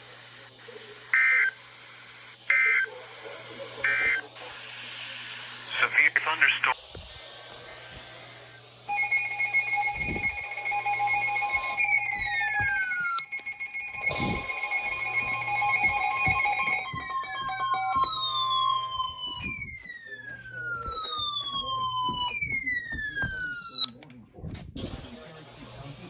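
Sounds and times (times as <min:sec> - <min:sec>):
falling alert tones: 0:08.9 - 0:23.9
steady two-tone attention signal: 0:08.9 - 0:23.9.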